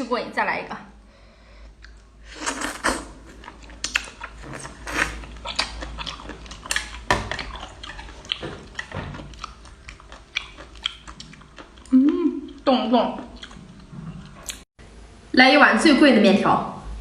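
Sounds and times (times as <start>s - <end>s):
chewing and biting: 1.8s - 14.6s.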